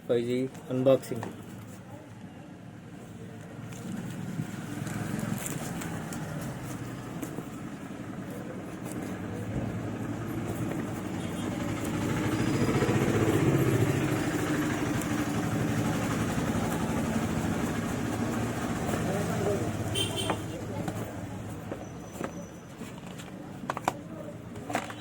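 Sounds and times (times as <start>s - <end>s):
vehicle engine passing: 3.7s - 22.2s.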